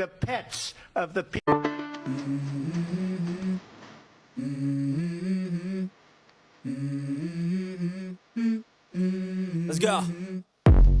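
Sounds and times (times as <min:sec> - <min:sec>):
person humming a melody: 0:02.0 - 0:03.6, 0:04.4 - 0:05.9, 0:06.6 - 0:10.5.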